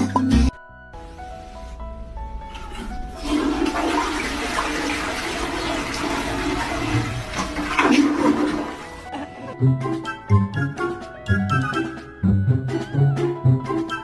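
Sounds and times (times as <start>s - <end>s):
water rushing: 2.4s - 9.0s.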